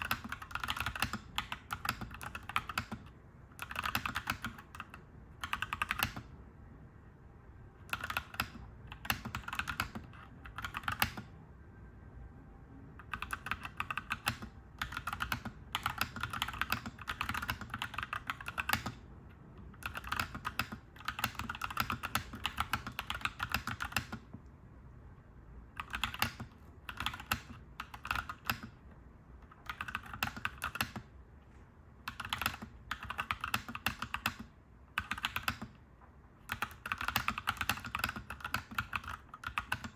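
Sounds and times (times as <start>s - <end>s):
mechanical keyboard typing: 0.0s - 6.3s, 7.8s - 11.4s, 13.0s - 19.0s, 19.6s - 24.4s, 25.7s - 28.8s, 29.4s - 31.1s, 32.0s - 35.8s, 36.4s - 39.9s.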